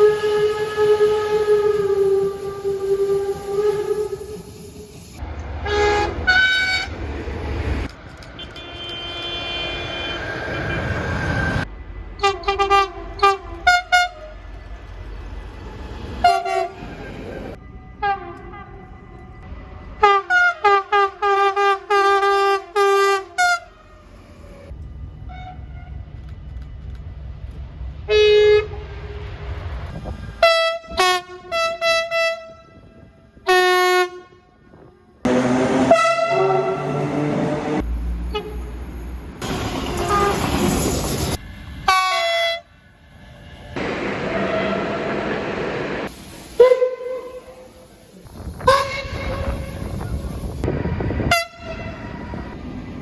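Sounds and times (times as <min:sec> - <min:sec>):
train horn toots and blasts: 0:00.0 - 0:04.8, 0:05.6 - 0:07.0, 0:08.4 - 0:11.0, 0:12.2 - 0:14.4, 0:16.2 - 0:16.8, 0:17.6 - 0:24.0, 0:25.2 - 0:26.1, 0:28.0 - 0:29.3, 0:30.4 - 0:34.7, 0:35.3 - 0:38.7, 0:39.5 - 0:40.7, 0:41.8 - 0:42.7, 0:44.2 - 0:45.2, 0:46.6 - 0:47.8, 0:48.6 - 0:50.2, 0:51.2 - 0:52.4
train rumble: 0:00.0 - 0:53.0.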